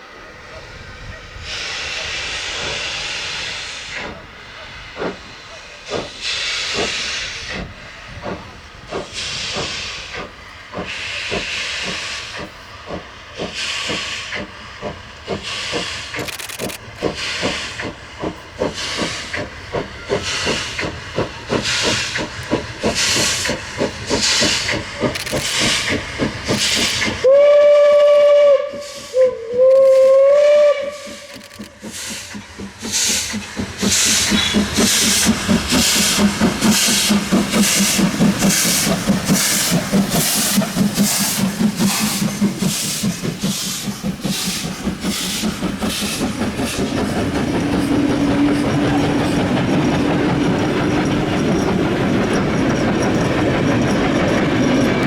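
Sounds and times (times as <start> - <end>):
steam locomotive exhaust chuffing: 0.1 - 55.0
steam whistle blasts: 27.2 - 31.3.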